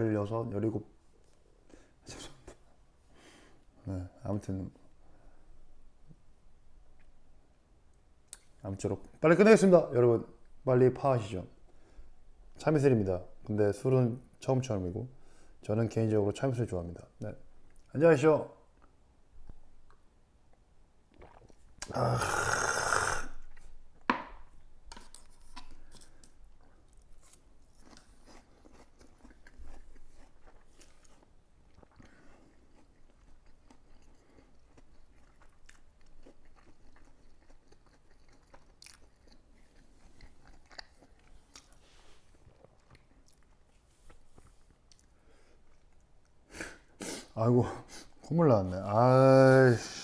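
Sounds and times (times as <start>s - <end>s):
person chewing food: 18.8s - 23.8s, 25.0s - 46.8s.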